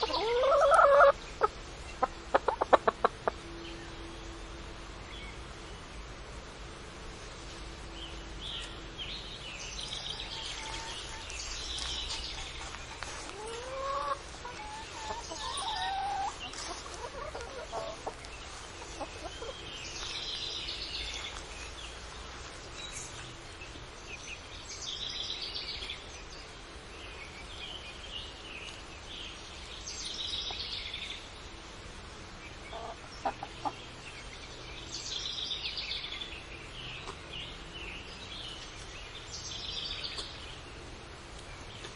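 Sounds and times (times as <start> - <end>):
chickens clucking: 0.0 - 3.4, 9.9 - 21.5, 32.5 - 34.4
high-pitched chicken calls: 0.0 - 3.4, 13.2 - 18.2.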